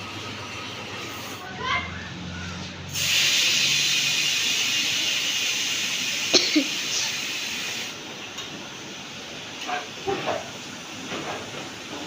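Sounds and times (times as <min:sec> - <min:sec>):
air hissing from tyre valve: 0:02.9 - 0:08.0.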